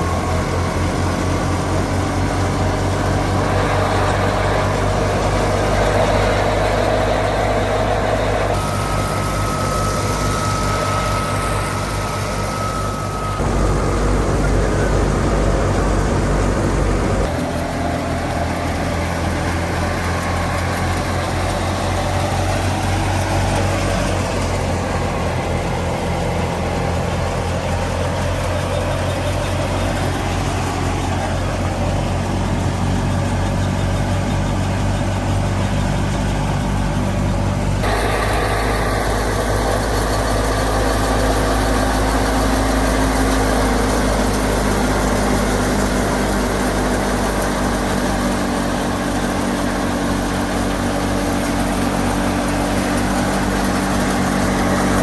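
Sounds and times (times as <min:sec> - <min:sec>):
thresher machinery whirring: 0:00.0 - 0:55.0
tractor diesel engine: 0:00.0 - 0:55.0.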